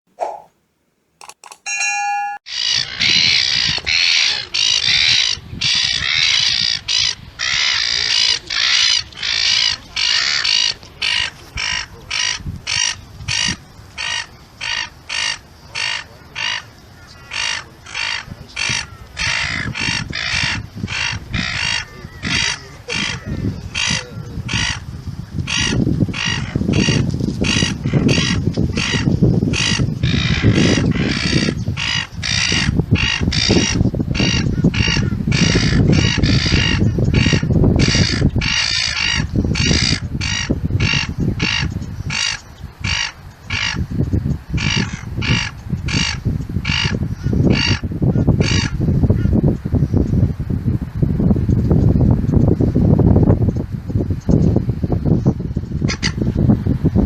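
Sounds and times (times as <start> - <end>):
gulls squawking: 0.2 - 0.5, 1.2 - 2.4.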